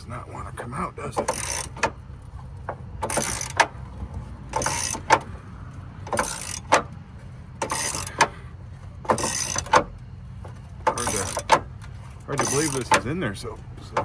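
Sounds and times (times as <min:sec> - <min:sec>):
sharp ratchet click: 0:01.2 - 0:02.0, 0:03.0 - 0:03.8, 0:04.5 - 0:05.3, 0:06.1 - 0:07.0, 0:07.6 - 0:08.4, 0:09.1 - 0:10.0, 0:10.9 - 0:11.7, 0:12.4 - 0:13.1
socket wrench ratcheting: 0:01.2 - 0:02.0, 0:03.0 - 0:03.9, 0:04.5 - 0:05.4, 0:06.1 - 0:07.0, 0:07.6 - 0:08.4, 0:09.1 - 0:10.0, 0:10.8 - 0:11.7, 0:12.3 - 0:13.2.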